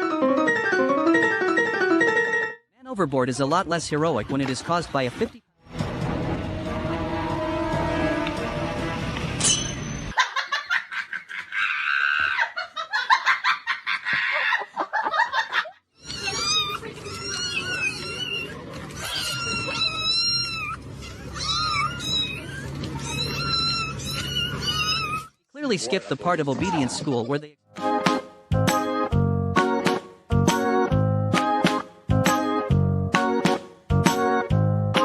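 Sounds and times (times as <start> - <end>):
animal high-pitched cries: 16.0 - 25.4.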